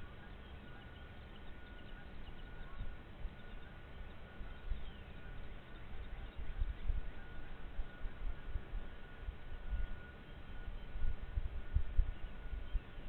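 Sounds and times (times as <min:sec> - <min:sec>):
faint bird chirps: 0:00.0 - 0:13.0
wind on microphone: 0:04.5 - 0:13.0.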